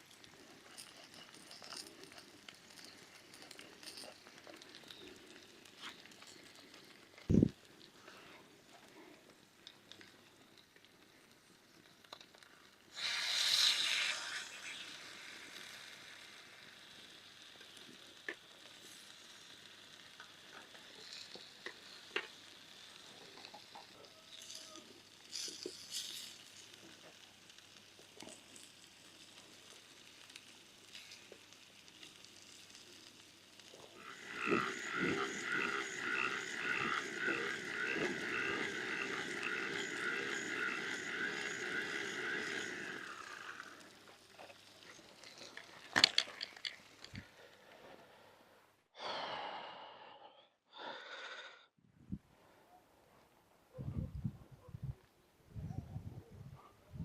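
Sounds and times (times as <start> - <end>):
chicken sizzling on hot stone: 0.0 - 47.3
small clicks and pops: 0.0 - 47.3
rhythmic pulsing sound: 34.0 - 43.8.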